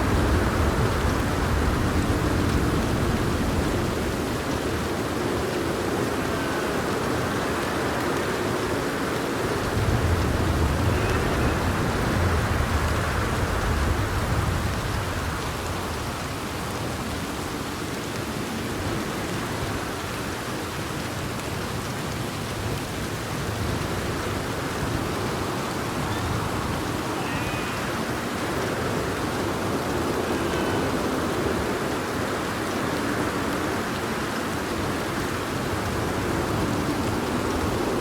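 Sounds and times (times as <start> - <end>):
steady rain falling: 0.0 - 38.0
low rumble of thunder: 9.6 - 17.1.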